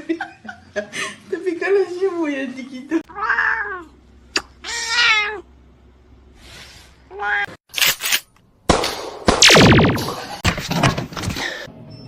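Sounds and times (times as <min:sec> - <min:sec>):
loud noisy sounds: 0:09.4 - 0:10.3.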